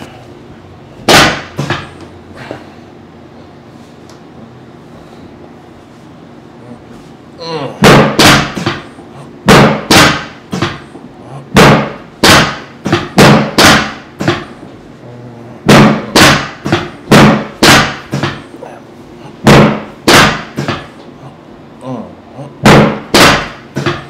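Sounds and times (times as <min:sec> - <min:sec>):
loud sharp slaps: 0:01.0 - 0:01.9, 0:07.8 - 0:10.8, 0:11.5 - 0:14.5, 0:15.7 - 0:18.4, 0:19.4 - 0:20.9, 0:22.6 - 0:24.0.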